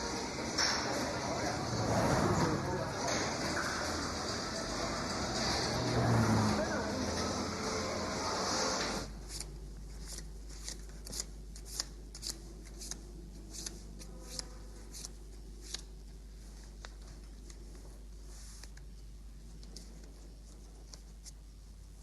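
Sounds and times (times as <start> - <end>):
street traffic noise: 0.0 - 9.1.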